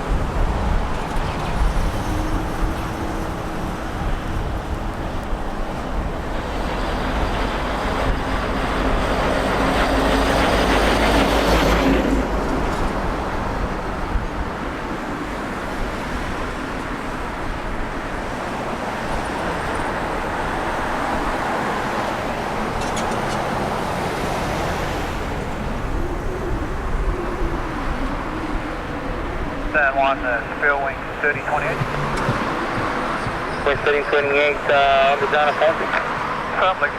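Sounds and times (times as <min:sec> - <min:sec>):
wind on microphone: 0:00.0 - 0:36.5
aircraft engine noise: 0:00.0 - 0:36.9.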